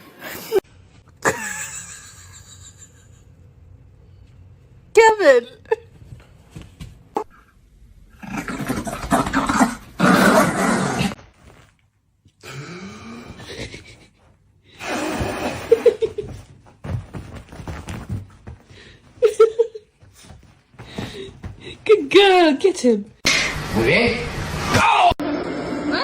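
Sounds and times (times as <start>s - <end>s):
dog growling: 8.2s - 11.2s.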